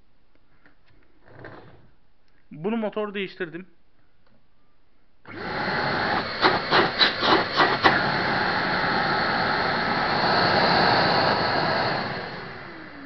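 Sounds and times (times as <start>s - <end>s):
vacuum cleaner motor running: 5.3s - 13.0s.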